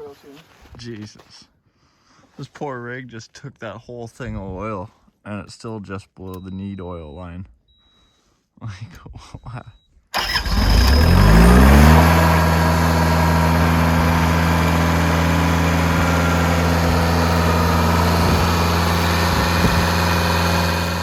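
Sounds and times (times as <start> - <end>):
skid steer engine starting and idling: 10.2 - 21.0.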